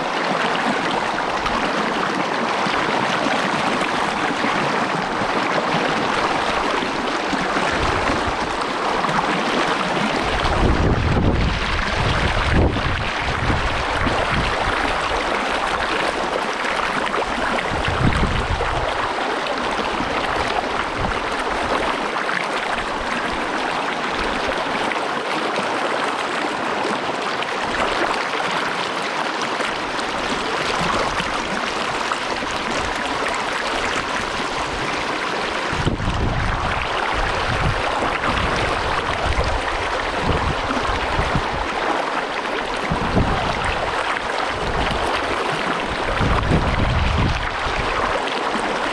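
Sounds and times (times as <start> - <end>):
water rushing over rocks: 0.0 - 48.9
wind buffeting microphone: 6.0 - 9.2, 9.9 - 16.4, 17.2 - 19.2, 20.0 - 22.0, 30.2 - 41.9, 42.6 - 48.9.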